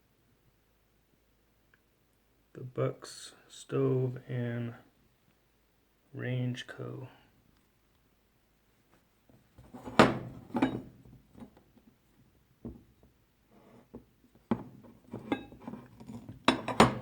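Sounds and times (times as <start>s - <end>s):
metal tools knocking and clinking: 10.0s - 11.0s, 15.1s - 17.0s.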